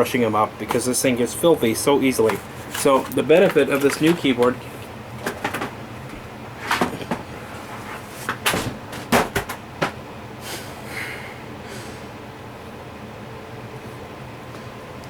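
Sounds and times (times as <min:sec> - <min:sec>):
plastic keyboard knocks and clicks: 0:08.4 - 0:10.0.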